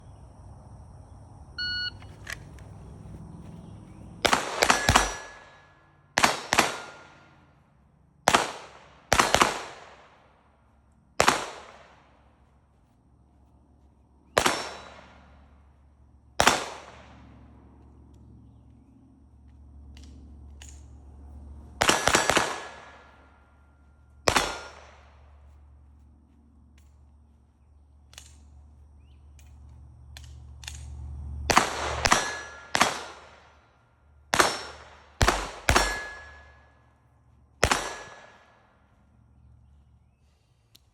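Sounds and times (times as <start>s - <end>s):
brief ringing tone: 1.6s - 2.1s
gunshots: 4.2s - 7.3s, 8.3s - 10.2s, 11.2s - 12.0s, 14.3s - 15.3s, 16.4s - 17.2s, 21.8s - 23.2s, 24.3s - 25.1s, 31.5s - 33.5s, 34.3s - 36.5s, 37.6s - 38.5s
faint small clicks: 40.7s - 40.9s.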